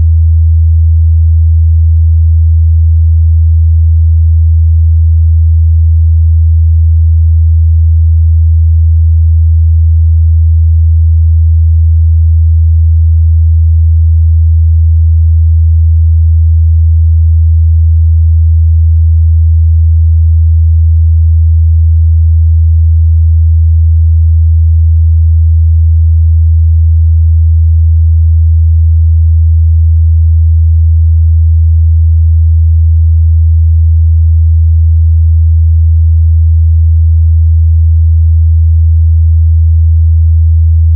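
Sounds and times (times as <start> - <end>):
low sine wave test tone: 0.0 - 40.9.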